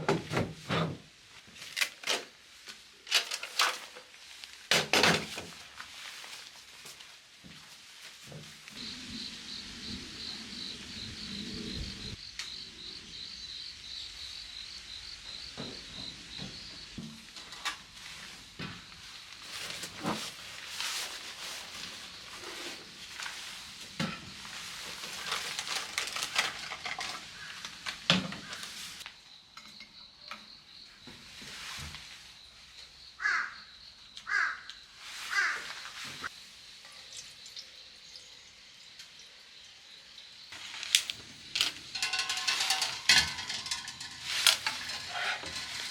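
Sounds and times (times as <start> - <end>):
light sizzle: 5.4 - 12.6, 35.0 - 45.9
cookware clinking and scraping: 25.3 - 28.7, 40.6 - 45.9.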